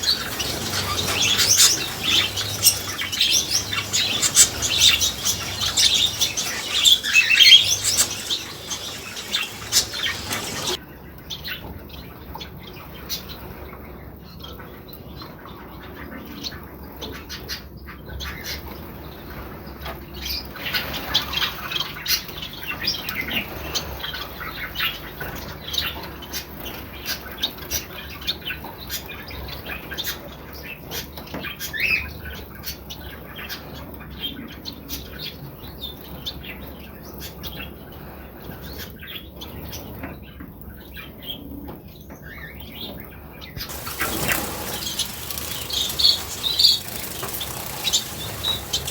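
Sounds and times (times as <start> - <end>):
birds splashing in water: 0.0 - 10.8, 43.6 - 48.9
finches chirping: 0.0 - 10.8, 43.6 - 48.9
wings fluttering: 0.0 - 10.8, 43.6 - 48.9.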